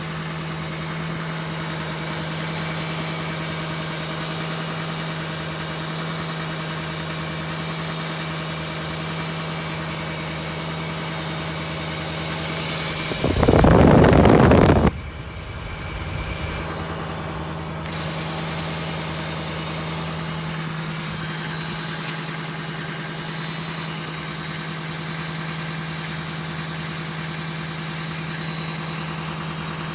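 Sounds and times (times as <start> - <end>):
diesel engine idling: 0.0 - 29.9
turbo whine: 0.0 - 29.9
loud rush of noise: 12.7 - 17.8.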